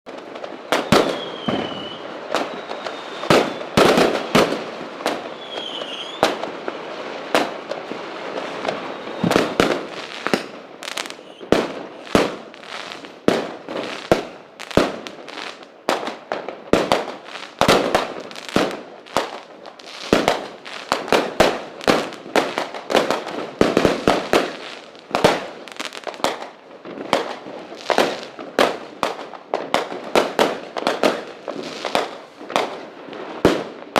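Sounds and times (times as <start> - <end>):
firecrackers bursting: 0.1 - 33.9
fireworks crackling: 0.1 - 33.9
whistling rockets: 0.7 - 7.5, 8.3 - 13.1.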